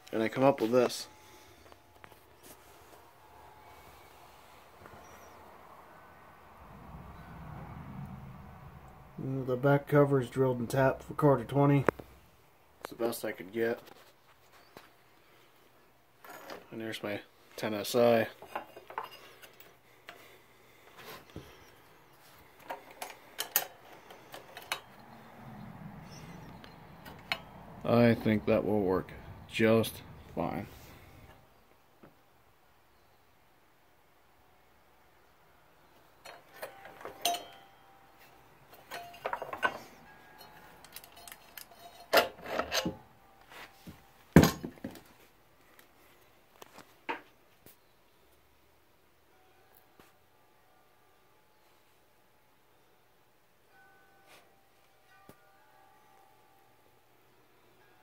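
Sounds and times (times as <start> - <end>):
parts scraping and knocking: 18.4 - 20.3, 22.2 - 27.9, 36.2 - 45.2
metallic clicks and clinks: 36.2 - 37.8, 38.8 - 43.0.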